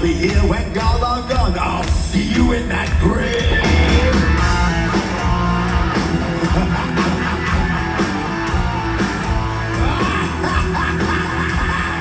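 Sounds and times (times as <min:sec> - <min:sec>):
live heavy metal band: 0:00.0 - 0:12.0
electric guitar: 0:02.8 - 0:12.0.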